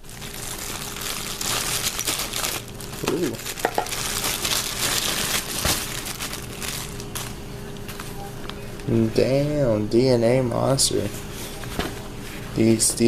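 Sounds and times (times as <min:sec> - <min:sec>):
plastic packaging crinkling: 0:00.0 - 0:08.9.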